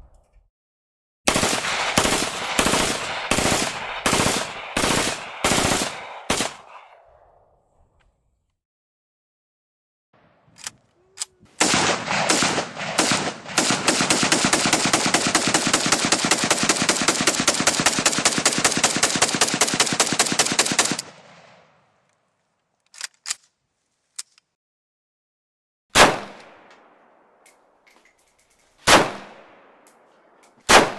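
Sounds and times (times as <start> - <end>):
automatic gunfire: 1.3 - 6.9, 11.6 - 21.6, 26.0 - 26.6, 28.9 - 29.5, 30.7 - 30.9.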